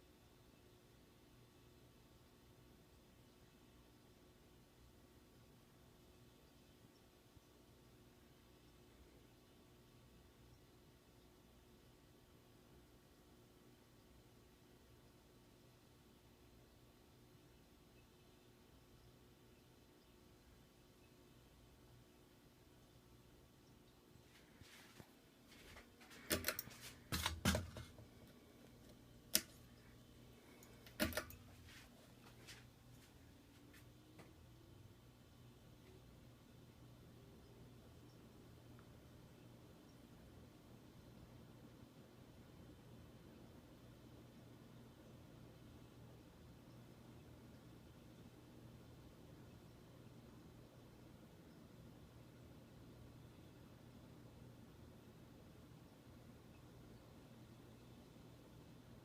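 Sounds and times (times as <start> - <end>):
ceiling fan humming: 0.0 - 59.0
sharp clicks and knocks: 26.0 - 29.7, 30.6 - 32.3.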